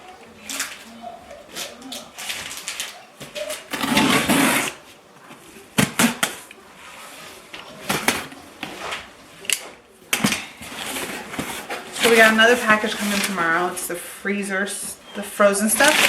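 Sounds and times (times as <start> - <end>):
cardboard rustling: 0.0 - 16.0
cardboard tearing: 1.5 - 4.9, 15.8 - 16.0.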